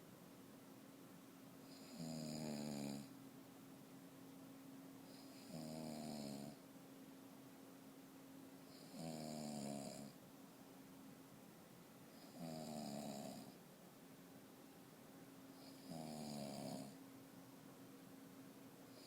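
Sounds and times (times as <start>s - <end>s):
person snoring: 1.7s - 3.1s, 5.1s - 6.6s, 8.7s - 10.1s, 12.2s - 13.6s, 15.6s - 17.0s.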